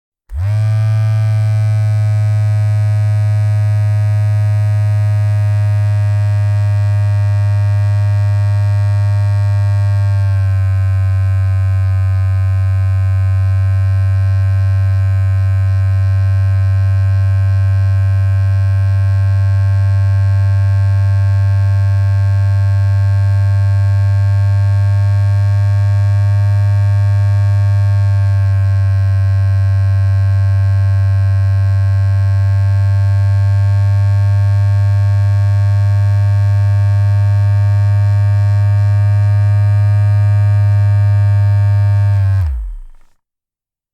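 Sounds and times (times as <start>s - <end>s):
massager motor humming: 0.3s - 10.7s, 35.8s - 43.2s.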